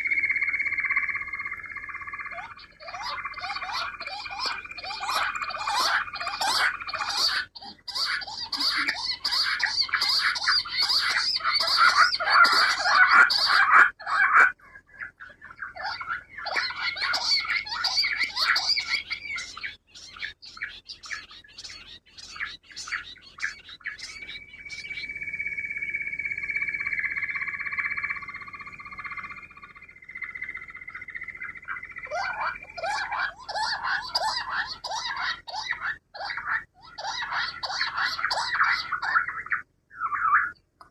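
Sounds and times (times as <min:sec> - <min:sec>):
quail calling: 0:00.0 - 0:40.9.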